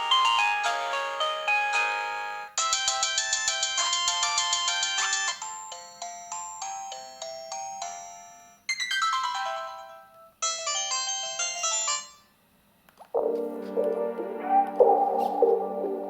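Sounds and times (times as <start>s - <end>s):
music: 0.0s - 8.6s, 13.2s - 16.0s.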